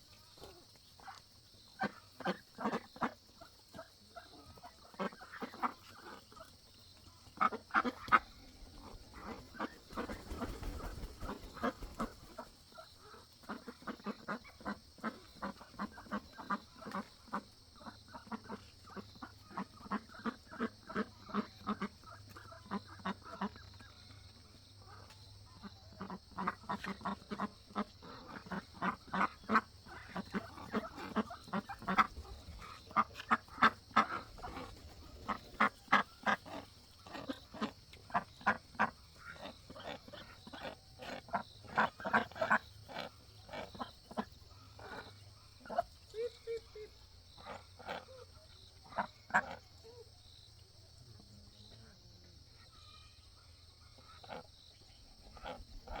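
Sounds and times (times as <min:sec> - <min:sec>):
ducks quacking: 0:00.0 - 0:50.0, 0:53.8 - 0:56.0.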